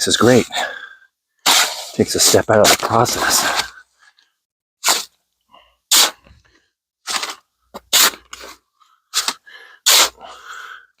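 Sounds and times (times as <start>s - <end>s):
tool scraping wet concrete: 1.5s - 3.7s, 7.1s - 8.5s, 9.2s - 10.2s.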